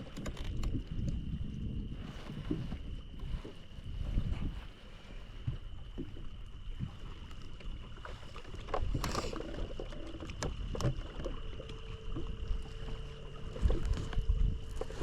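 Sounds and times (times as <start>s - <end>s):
low rumble on a boat: 0.0s - 15.0s
lower steady tone: 10.2s - 15.0s
steady high-pitched tone: 11.3s - 15.0s.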